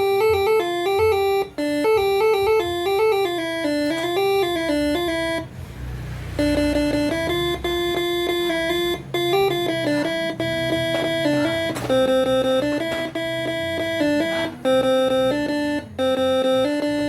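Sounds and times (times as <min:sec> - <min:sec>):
air horn playing a melody: 0:12.5 - 0:17.0.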